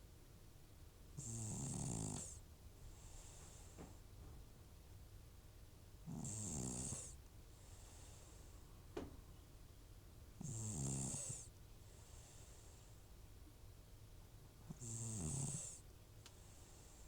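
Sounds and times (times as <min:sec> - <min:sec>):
cat snoring with buzzing snores: 0:01.2 - 0:02.4, 0:06.0 - 0:08.4, 0:10.4 - 0:12.9, 0:14.7 - 0:17.0
cat breathing softly: 0:02.9 - 0:04.0, 0:07.5 - 0:08.6, 0:11.8 - 0:13.0, 0:16.4 - 0:17.0.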